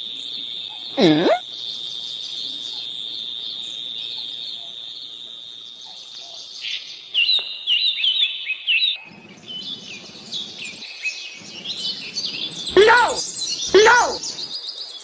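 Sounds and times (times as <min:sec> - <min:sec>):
bird chirping: 0:07.2 - 0:15.0.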